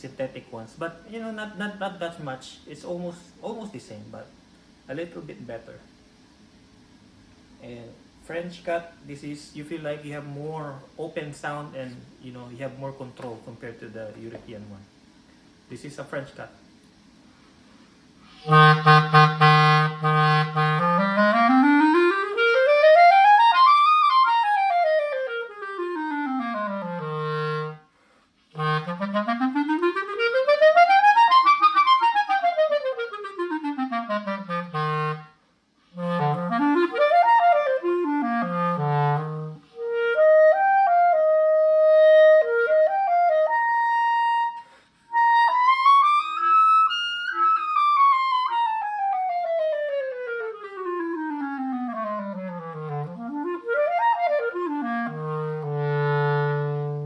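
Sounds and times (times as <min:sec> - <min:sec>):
clarinet playing runs: 0:18.3 - 0:27.9, 0:28.5 - 0:57.0.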